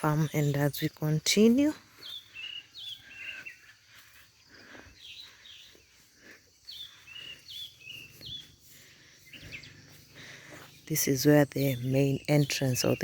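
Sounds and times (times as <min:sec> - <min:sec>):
birds singing whistled phrases: 0:00.0 - 0:13.0.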